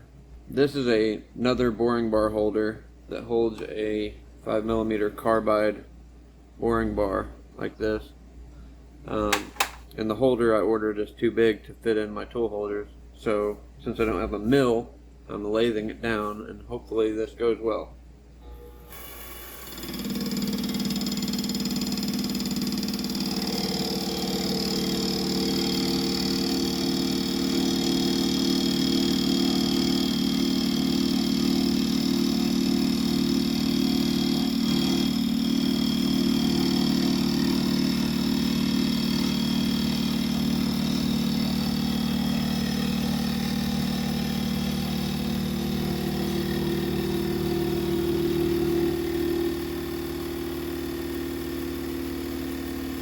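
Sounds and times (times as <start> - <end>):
lathe motor and gear hum: 18.9 - 53.0.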